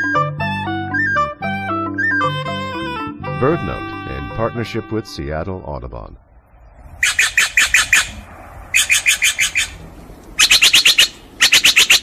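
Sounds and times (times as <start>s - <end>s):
jay calling: 7.0s - 9.8s, 10.4s - 12.0s.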